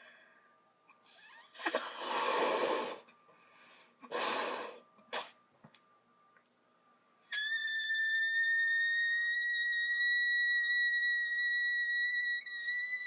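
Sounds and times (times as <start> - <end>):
person making harsh breathy noises: 1.0 - 3.1, 4.0 - 5.4.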